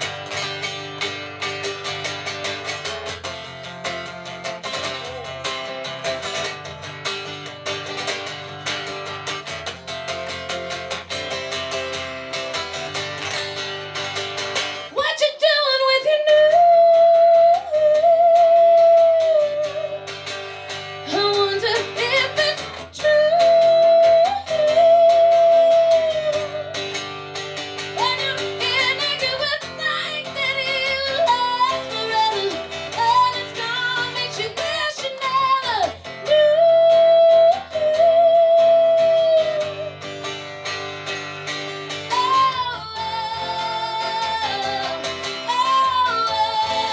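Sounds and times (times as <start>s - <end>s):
guitar-led band playing: 0.0s - 15.0s, 18.2s - 46.9s
woman singing with vibrato: 14.8s - 20.3s, 21.0s - 27.1s, 27.7s - 40.5s, 41.8s - 46.9s.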